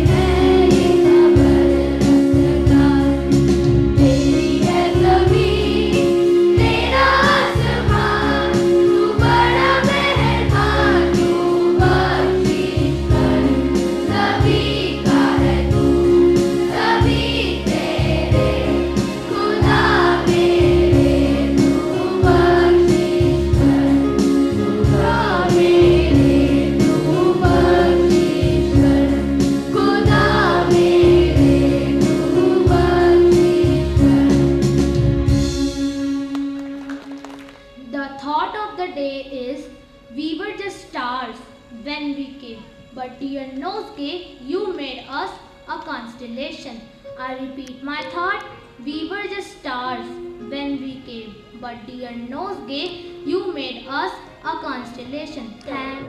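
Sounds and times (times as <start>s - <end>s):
chorus singing a prayer song: 0.0s - 35.8s
rhythmic beat: 0.0s - 37.2s
held accompaniment notes: 0.0s - 56.0s.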